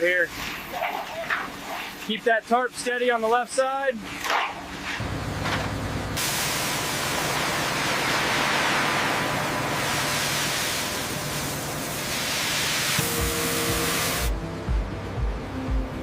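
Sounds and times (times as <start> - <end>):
abrasive blasting hiss: 6.2 - 14.3
music: 13.0 - 16.0.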